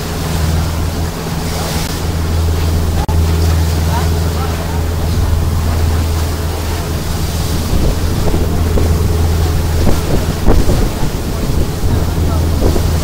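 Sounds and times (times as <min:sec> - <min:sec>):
boat engine humming: 0:00.0 - 0:13.0
water noise: 0:00.0 - 0:13.0
wind on microphone: 0:00.0 - 0:13.0.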